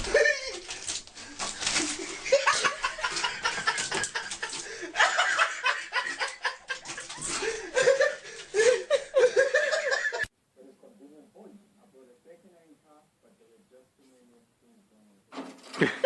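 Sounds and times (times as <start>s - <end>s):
people laughing: 0.0s - 0.9s, 1.5s - 10.3s, 15.8s - 16.0s
people talking: 10.6s - 15.3s.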